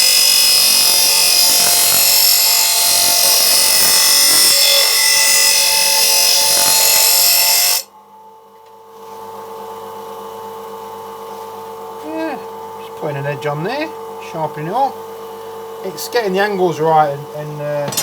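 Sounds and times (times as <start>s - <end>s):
grinder motor hum: 0.0s - 7.9s
grinding wheel on metal blade: 0.0s - 7.9s.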